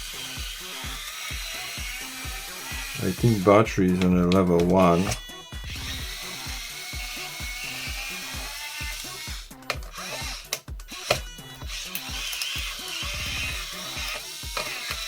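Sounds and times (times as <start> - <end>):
background music with steady beat: 0.0 - 15.0
electric screwdriver whirring: 0.0 - 15.0
sharp clicks: 8.9 - 15.0.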